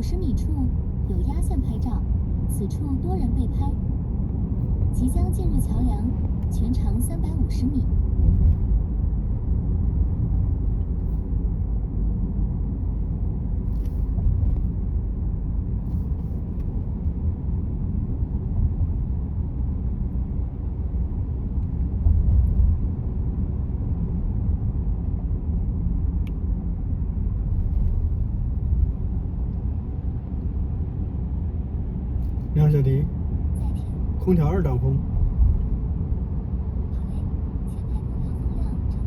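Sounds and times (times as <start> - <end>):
tyre and road noise in car: 7.8 - 34.2.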